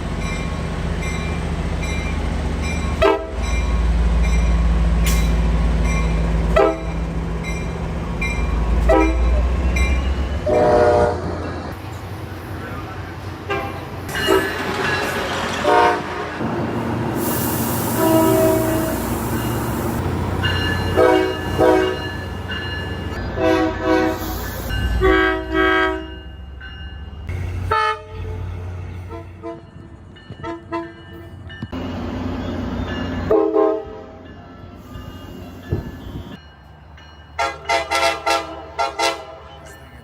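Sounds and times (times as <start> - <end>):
low train rumble: 0.0 - 40.0
train horn blasts: 3.0 - 3.4, 6.5 - 7.0, 8.8 - 9.5, 10.4 - 11.4, 13.5 - 14.6, 15.6 - 16.5, 17.8 - 19.2, 20.9 - 22.1, 23.3 - 24.3, 24.9 - 26.2, 27.7 - 29.7, 33.3 - 34.2, 37.4 - 39.6.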